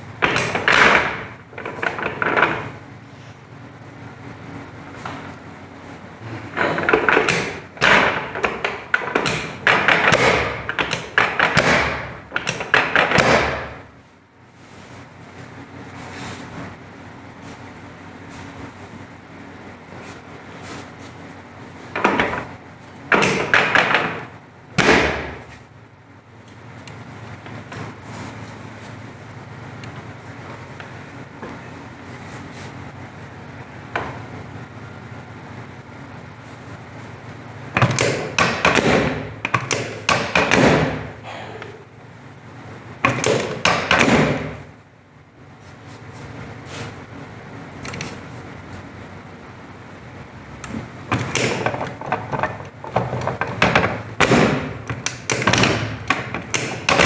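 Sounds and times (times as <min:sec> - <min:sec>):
table sections snapping down: 0:00.2 - 0:02.8, 0:06.5 - 0:13.9, 0:23.1 - 0:25.6, 0:37.8 - 0:41.7, 0:43.0 - 0:44.7, 0:50.6 - 0:57.0.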